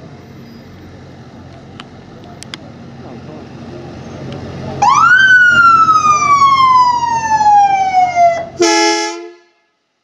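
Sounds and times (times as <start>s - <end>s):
traffic rumble: 0.0s - 9.3s
ambulance siren: 4.8s - 8.8s
deep air horn blast: 8.6s - 9.8s.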